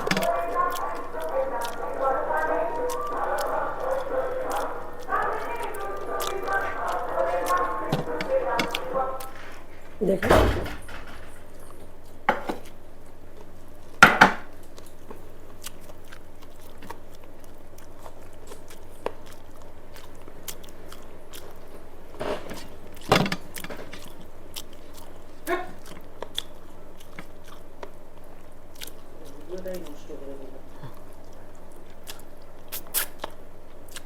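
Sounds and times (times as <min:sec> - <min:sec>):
lip smacks: 0:00.0 - 0:10.0, 0:10.8 - 0:30.0, 0:30.6 - 0:34.0
person chewing food: 0:00.0 - 0:10.1, 0:10.8 - 0:34.0
mouth clicks: 0:00.0 - 0:12.8, 0:30.6 - 0:34.0.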